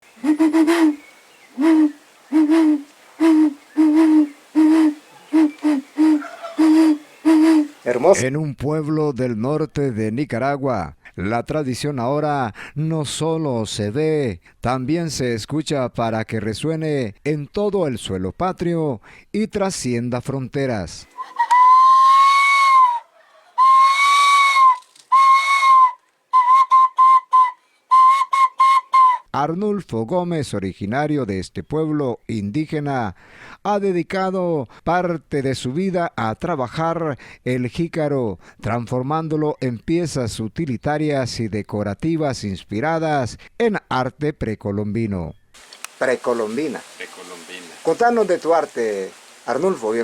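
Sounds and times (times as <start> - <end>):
gourd whistle blown: 0.1 - 7.9, 21.2 - 29.3
low breathy whistle hoots: 0.2 - 7.8.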